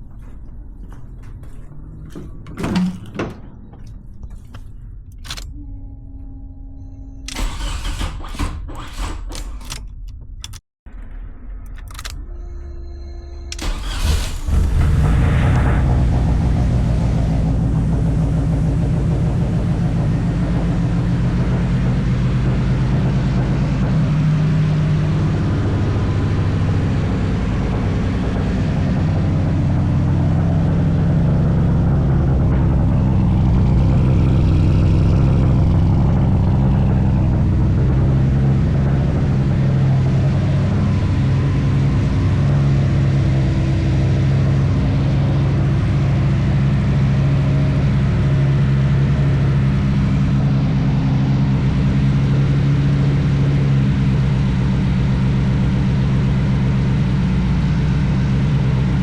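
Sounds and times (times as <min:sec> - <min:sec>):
car engine idling: 0:13.5 - 0:59.0.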